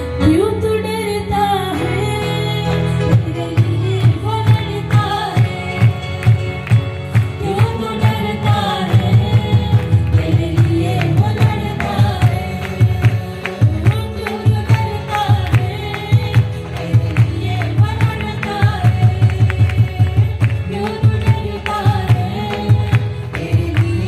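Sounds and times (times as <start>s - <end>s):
instrumental accompaniment: 0.0s - 24.0s
steady driving drum beat: 3.1s - 24.0s
choir singing: 8.1s - 12.8s.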